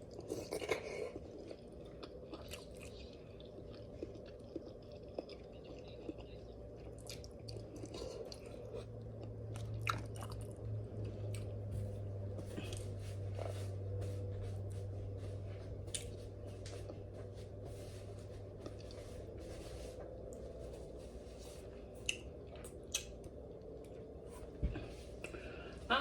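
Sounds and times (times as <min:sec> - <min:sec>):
wet chewing mouth sounds: 0:00.0 - 0:11.6, 0:15.8 - 0:17.1
steady low hum: 0:00.0 - 0:26.0.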